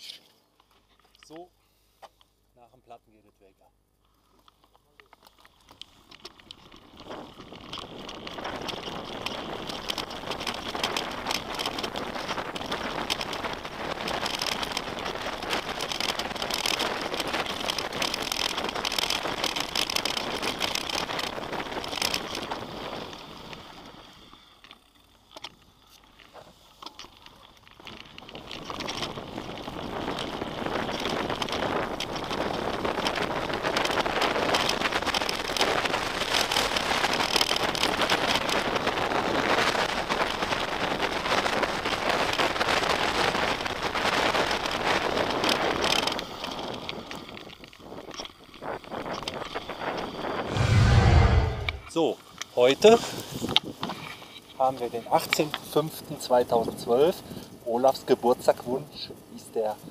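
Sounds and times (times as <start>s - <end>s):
bike tyres on stones and gravel: 3.9s - 50.7s
small clicks and knocks: 24.6s - 29.1s
wind on microphone: 50.4s - 51.9s.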